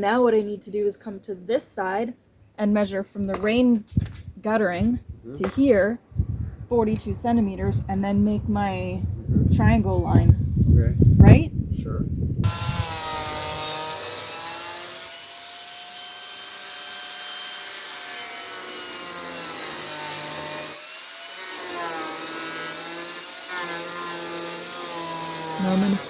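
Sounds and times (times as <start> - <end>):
electric saw cutting: 12.4 - 26.0.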